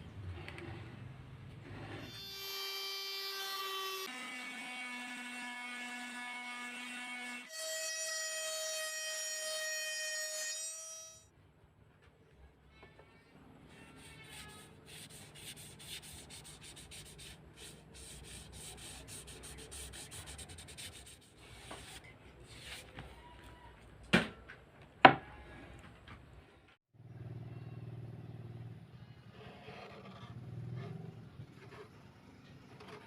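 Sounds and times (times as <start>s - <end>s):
rubbing and scraping on wood: 13.9s - 23.2s.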